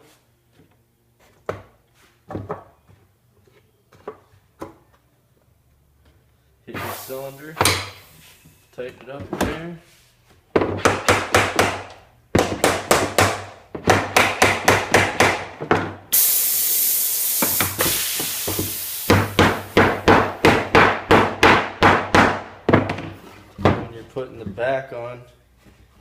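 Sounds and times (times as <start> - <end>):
loud hiss: 6.7 - 8.2, 16.1 - 20.0
hammer striking wood: 10.6 - 15.8, 18.5 - 23.0.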